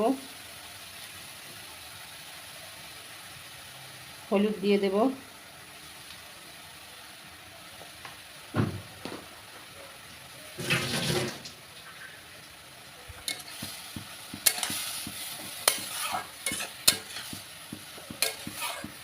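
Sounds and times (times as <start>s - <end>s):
vegetables sizzling in oil: 0.0s - 19.0s
spatula scraping and knocking pan: 13.2s - 19.0s.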